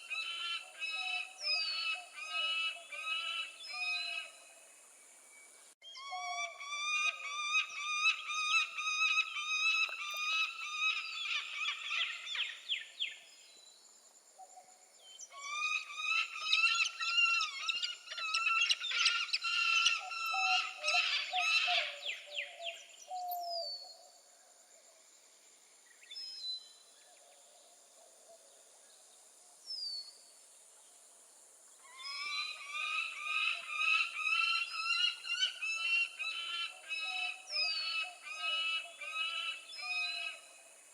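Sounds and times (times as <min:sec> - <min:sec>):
falcon calling: 0:15.4 - 0:22.7.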